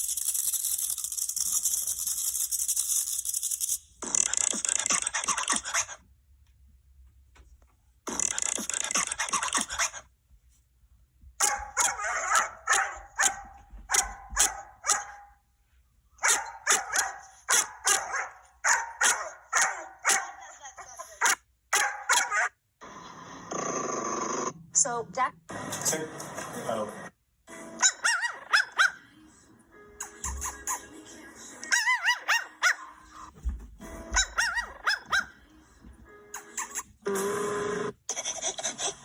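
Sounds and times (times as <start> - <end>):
dog barking: 11.4 - 15.4, 16.2 - 22.6, 27.8 - 29.1, 31.7 - 33.2, 34.2 - 35.4.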